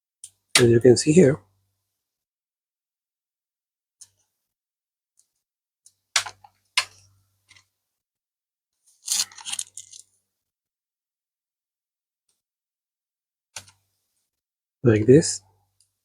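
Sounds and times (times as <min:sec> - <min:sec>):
tape peeling crackle: 0:09.0 - 0:10.0.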